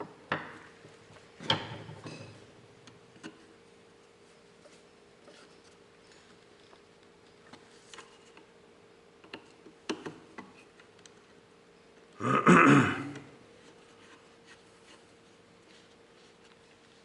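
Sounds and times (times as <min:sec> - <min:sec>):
faint steady hum: 0:00.0 - 0:17.0
person clearing throat: 0:12.2 - 0:13.4.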